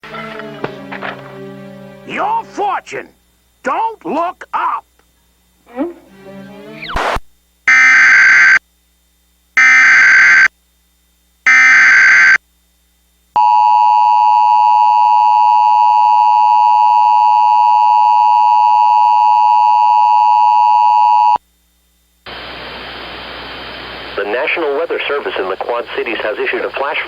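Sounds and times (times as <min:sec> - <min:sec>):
screechy digital data bursts: 0:07.7 - 0:08.6, 0:09.6 - 0:10.5, 0:11.5 - 0:12.4
two-tone alarm: 0:07.7 - 0:08.6, 0:09.6 - 0:10.5, 0:11.5 - 0:12.4.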